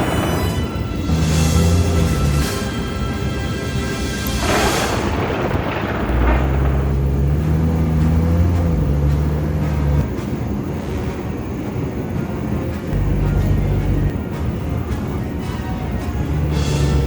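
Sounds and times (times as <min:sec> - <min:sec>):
low vehicle-like rumble: 0:00.0 - 0:03.5, 0:04.2 - 0:10.2, 0:12.6 - 0:14.9, 0:16.0 - 0:17.0.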